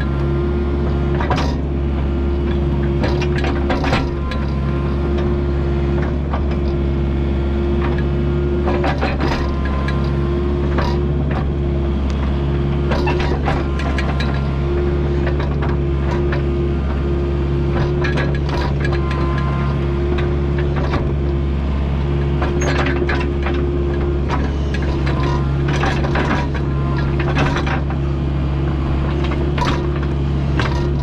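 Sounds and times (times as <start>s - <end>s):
diesel engine running: 0.0s - 31.0s
hydraulic whine: 0.0s - 31.0s.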